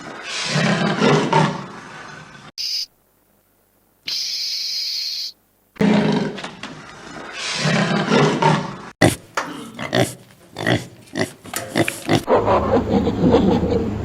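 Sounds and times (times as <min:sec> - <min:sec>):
animal calling roughly: 0:07.2 - 0:14.0.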